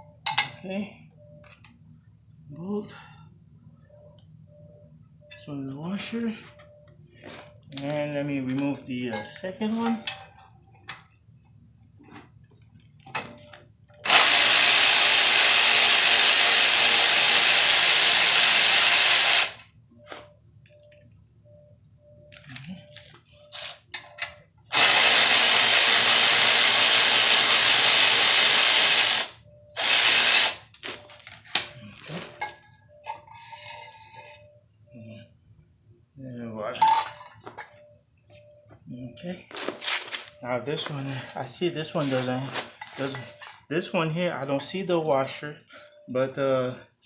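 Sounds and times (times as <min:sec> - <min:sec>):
power tool running: 0:14.0 - 0:19.6, 0:24.7 - 0:30.7.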